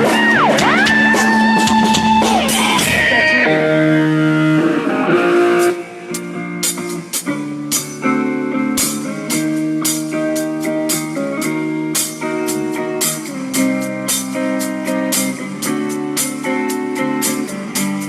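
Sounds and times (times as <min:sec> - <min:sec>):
drum or cymbal strikes: 0:00.0 - 0:03.5, 0:05.6 - 0:18.0
electric guitar held notes: 0:00.0 - 0:18.0
rock band playing live: 0:00.0 - 0:18.0.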